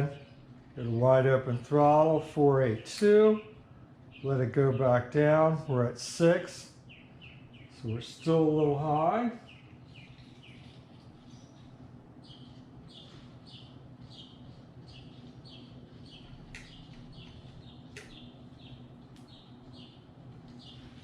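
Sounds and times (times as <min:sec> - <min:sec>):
low steady hum: 0:00.0 - 0:21.0
small bird chirping: 0:06.8 - 0:08.4, 0:09.4 - 0:21.0.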